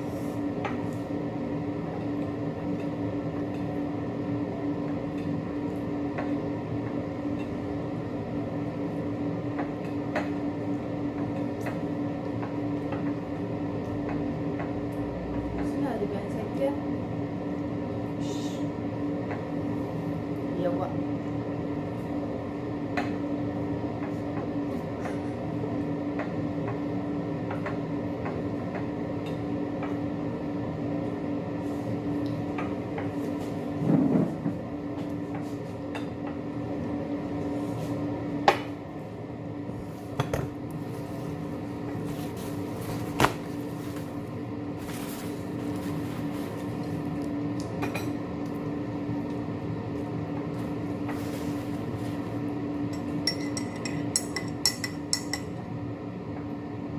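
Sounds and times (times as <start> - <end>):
dishes and utensils clinking: 53.0 - 55.5.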